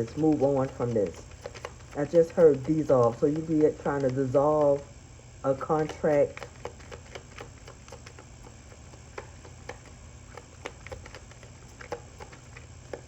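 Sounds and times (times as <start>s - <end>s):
cards clicking and tapping: 0.0s - 4.9s, 5.6s - 13.0s
steady low hum: 0.0s - 13.0s.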